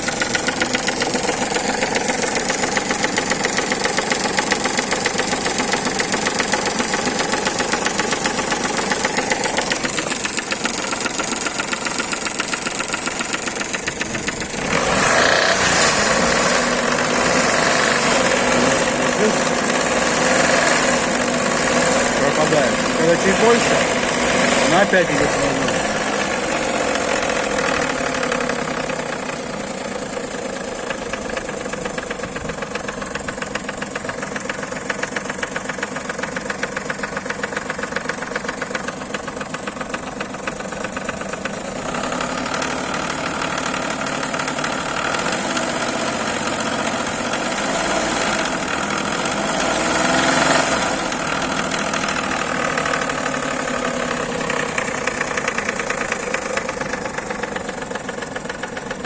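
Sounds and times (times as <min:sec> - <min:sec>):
engine running: 0:00.0 - 0:59.0.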